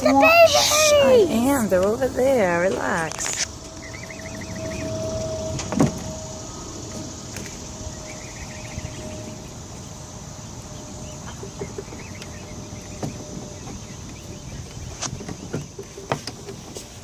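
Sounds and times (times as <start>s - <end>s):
outdoor background hiss: 0.0s - 17.0s
bird warbling trill: 3.4s - 15.4s.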